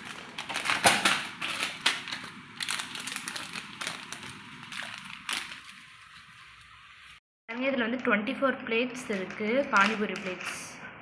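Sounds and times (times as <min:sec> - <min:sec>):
plastic packaging crinkling: 0:00.0 - 0:07.2, 0:09.0 - 0:10.6.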